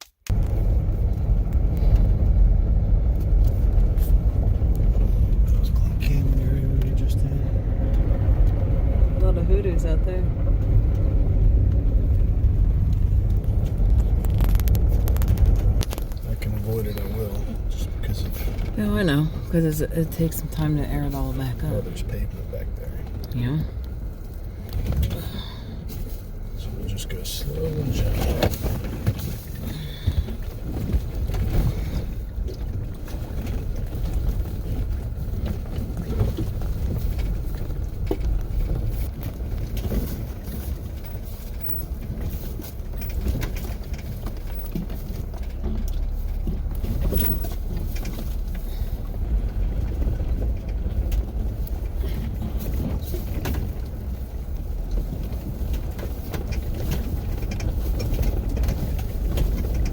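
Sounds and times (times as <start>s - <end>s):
vehicle low rumble: 0.0s - 59.9s
knocks and rattles: 27.3s - 59.9s.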